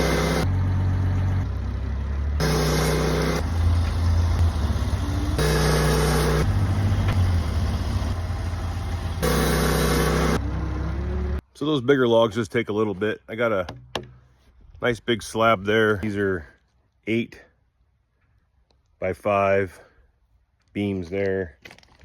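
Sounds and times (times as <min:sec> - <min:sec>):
sawmill engine sawing log: 0:00.0 - 0:11.4.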